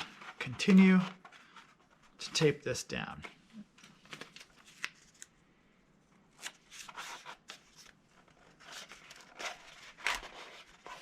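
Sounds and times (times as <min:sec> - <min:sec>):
tape and cardboard rustling: 0:06.4 - 0:11.0.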